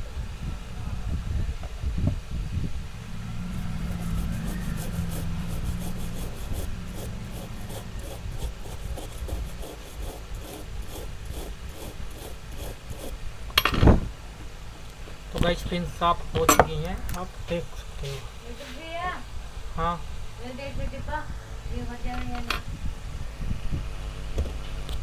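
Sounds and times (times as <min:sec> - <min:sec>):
small brush scrubbing: 0:03.4 - 0:13.2.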